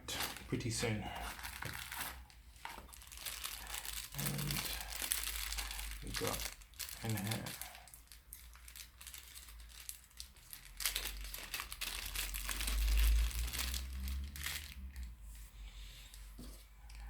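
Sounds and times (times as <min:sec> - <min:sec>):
packaging crinkling: 0:00.1 - 0:15.1.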